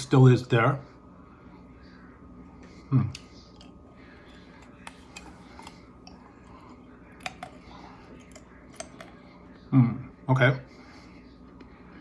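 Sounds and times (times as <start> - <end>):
person chewing almonds: 3.0 - 9.3.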